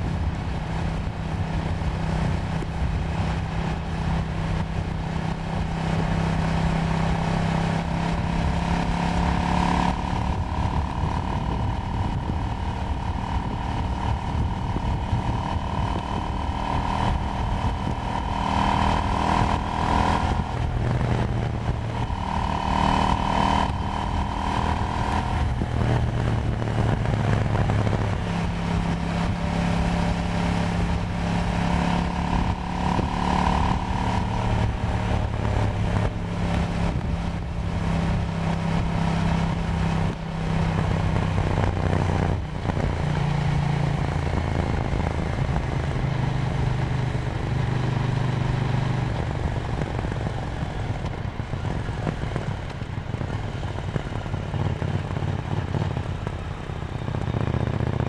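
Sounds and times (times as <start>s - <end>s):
motorcycle engine running: 0.0s - 58.0s
wind and road noise: 0.0s - 58.0s.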